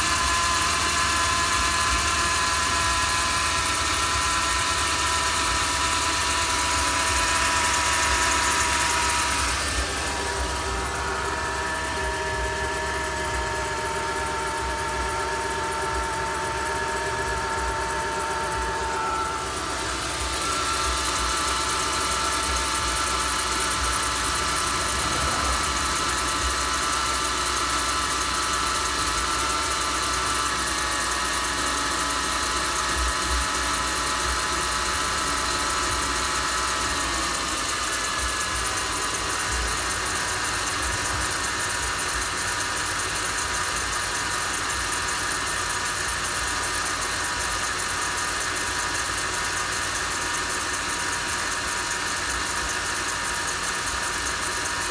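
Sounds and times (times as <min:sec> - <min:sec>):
car engine idling: 0:00.0 - 0:54.9
faint whining tone: 0:05.0 - 0:29.8.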